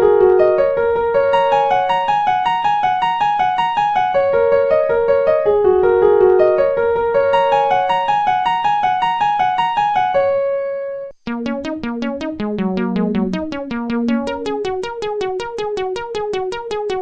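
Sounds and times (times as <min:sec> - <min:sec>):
keyboard music: 0:00.0 - 0:17.0.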